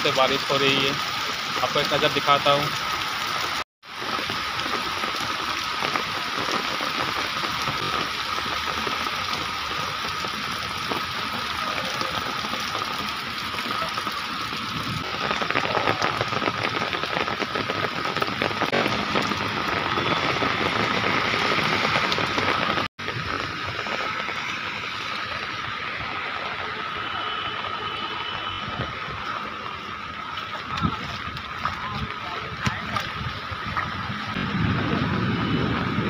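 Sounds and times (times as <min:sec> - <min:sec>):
running water: 0:00.0 - 0:34.4
heavy rain on a road: 0:00.0 - 0:36.0.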